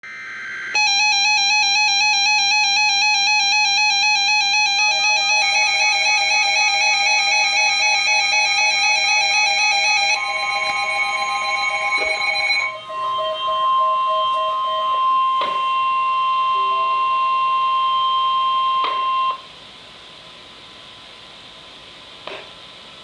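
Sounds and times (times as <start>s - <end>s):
harsh warbling alert tone: 9.3s - 17.3s
lower pulsing tone: 11.8s - 19.3s.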